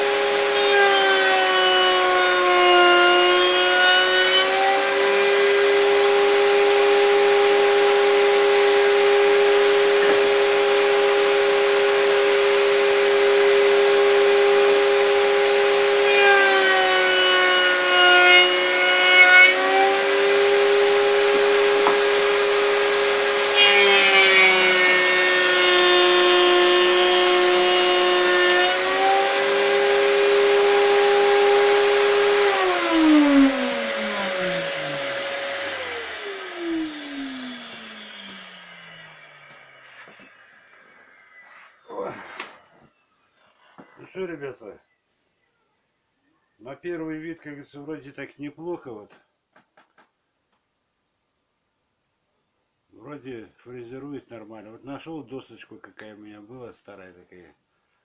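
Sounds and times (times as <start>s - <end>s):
router whining: 0.0s - 44.0s
vacuum cleaner running: 4.5s - 16.0s, 19.7s - 43.0s.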